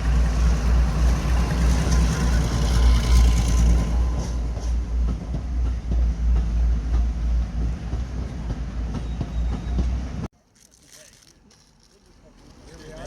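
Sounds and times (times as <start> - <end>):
train low rumble: 0.0 - 10.3.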